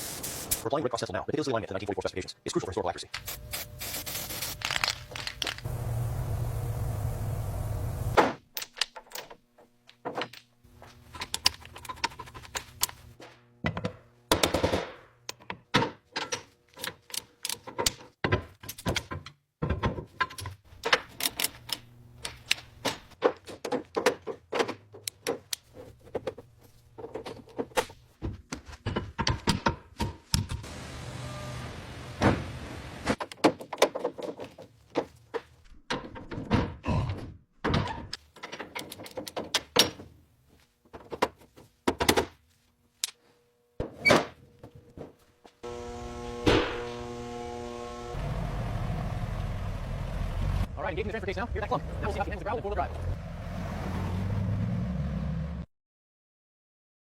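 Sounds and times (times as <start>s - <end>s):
steady noise: 5.7s - 8.2s.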